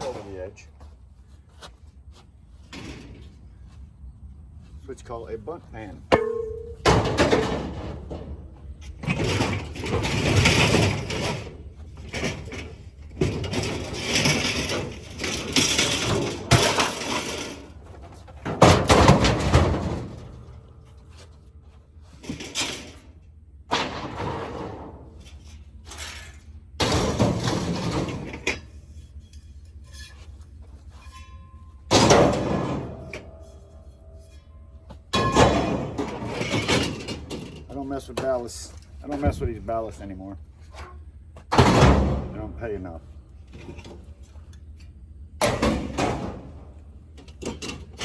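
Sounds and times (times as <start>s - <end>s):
scrap metal clattering onto pile: 6.1s - 20.7s, 22.1s - 39.6s, 45.4s - 48.0s.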